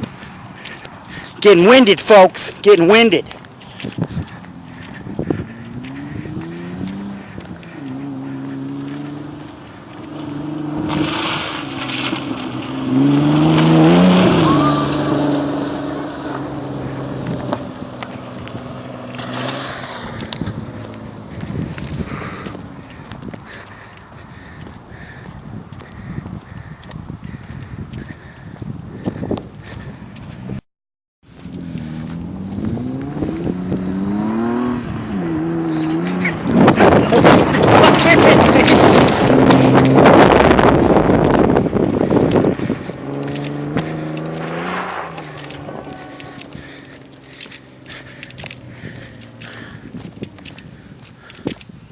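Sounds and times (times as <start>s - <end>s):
wheels spinning in mud: 0.0s - 25.2s, 31.3s - 51.8s
car engine revving: 4.2s - 23.1s, 31.4s - 50.6s.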